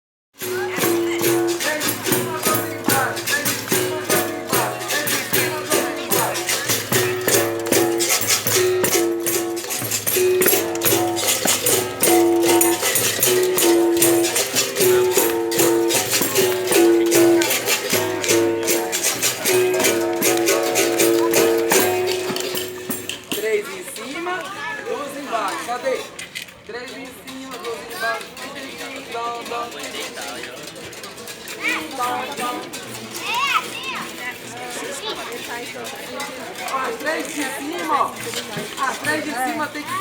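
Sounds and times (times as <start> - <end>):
berimbau twanging notes: 0.4 - 23.5
basket rattle shaking: 0.4 - 24.3, 26.9 - 40.0.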